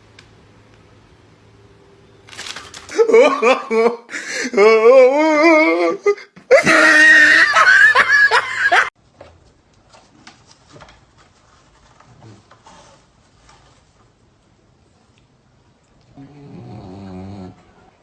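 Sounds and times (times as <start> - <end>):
person laughing loudly: 6.5 - 8.9.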